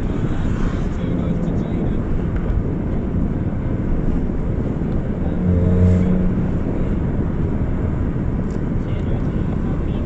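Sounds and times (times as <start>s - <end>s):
droning tone: 5.1s - 7.1s.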